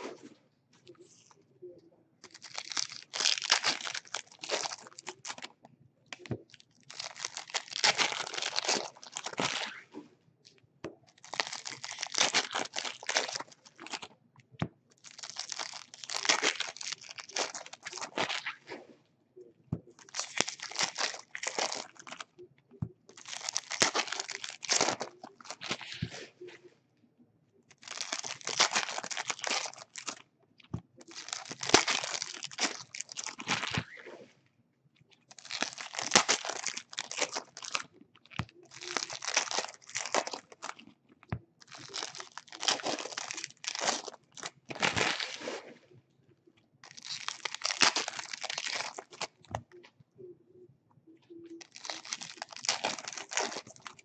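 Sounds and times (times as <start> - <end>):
foil wrappers crinkling and tearing: 2.3 - 5.5, 6.2 - 9.8, 11.1 - 14.1, 15.0 - 18.6, 20.0 - 22.3, 23.1 - 26.1, 27.7 - 30.2, 31.0 - 34.0, 35.3 - 40.8, 41.6 - 45.6, 46.8 - 49.5, 51.6 - 54.0.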